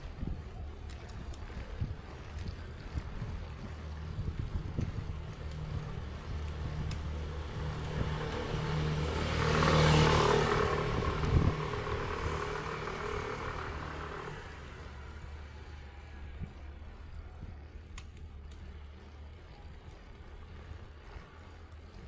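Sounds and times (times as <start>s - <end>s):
vehicle passing by: 4.9s - 16.6s.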